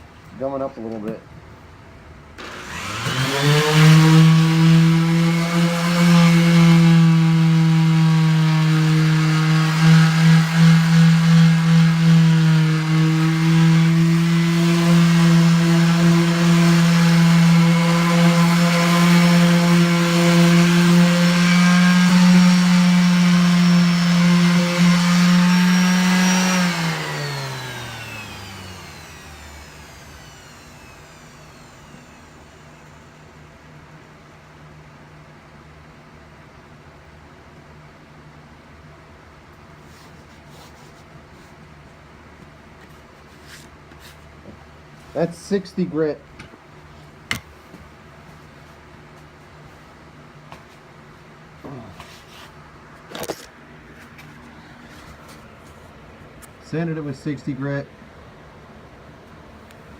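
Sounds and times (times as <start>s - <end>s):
electric power sander running: 2.4s - 33.7s.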